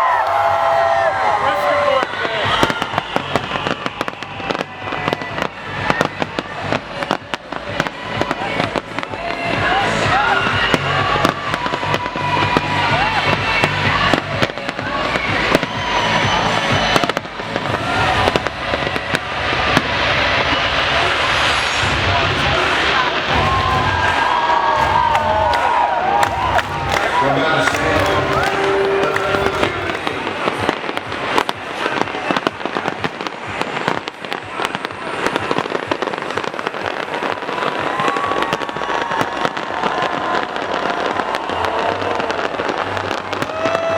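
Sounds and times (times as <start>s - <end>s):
fireworks bangs and cracks: 0.0s - 43.9s
rumble of explosions: 16.8s - 42.0s.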